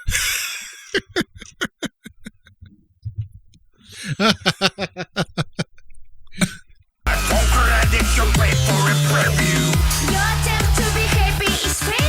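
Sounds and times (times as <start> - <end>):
person laughing: 0.0 - 2.7, 3.9 - 5.8.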